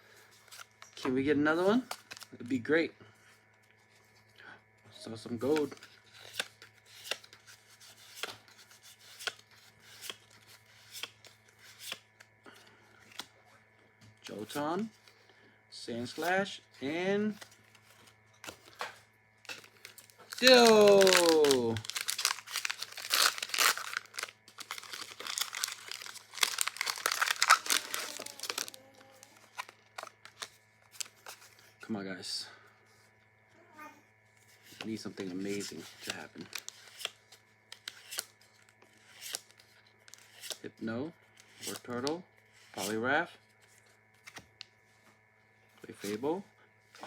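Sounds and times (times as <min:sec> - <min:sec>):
foil wrapper crinkling: 0:19.5 - 0:31.4, 0:36.1 - 0:37.0.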